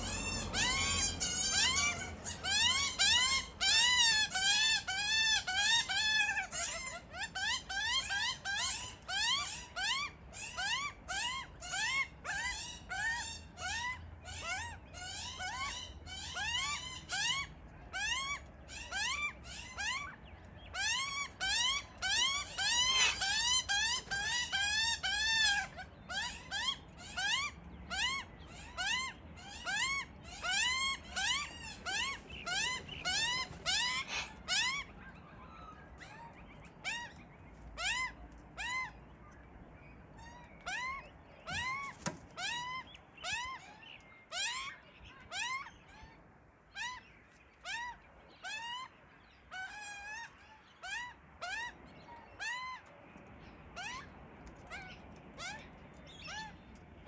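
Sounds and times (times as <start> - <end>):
baby magpies begging calls: 0.0 - 39.0, 40.2 - 52.9, 53.7 - 56.6.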